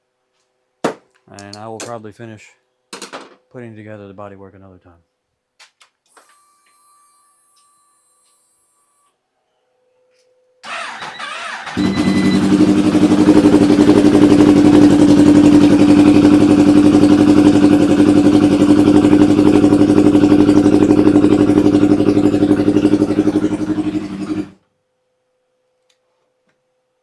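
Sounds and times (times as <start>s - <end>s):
motorcycle engine idling: 10.7s - 24.6s.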